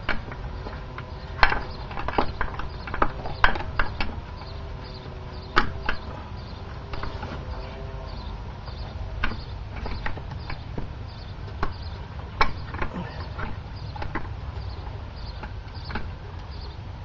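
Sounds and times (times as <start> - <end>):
hand tools clicking and knocking: 0.0 - 4.6, 5.4 - 6.3, 8.7 - 16.5.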